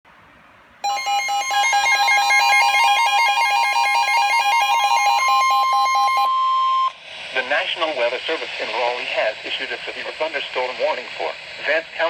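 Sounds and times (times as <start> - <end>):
steady warning tone: 0.8 - 6.9
rapid alert beeps: 0.9 - 6.3.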